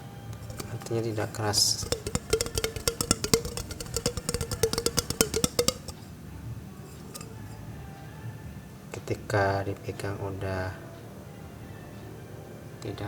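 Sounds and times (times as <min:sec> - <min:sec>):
fruit knocking in glass jar: 0:00.4 - 0:06.0, 0:06.9 - 0:07.4.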